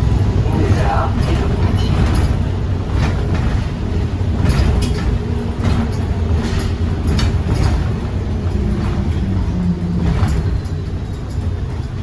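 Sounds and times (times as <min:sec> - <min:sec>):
bus engine rumbling: 0:00.0 - 0:12.0
rattles and clicks: 0:00.5 - 0:12.0.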